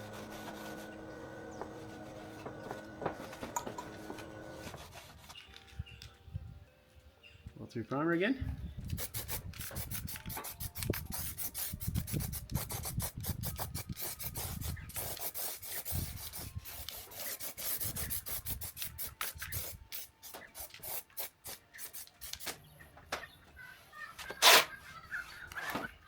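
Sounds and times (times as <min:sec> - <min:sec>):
hand scraping sheet metal: 0:00.0 - 0:05.4, 0:24.3 - 0:24.8.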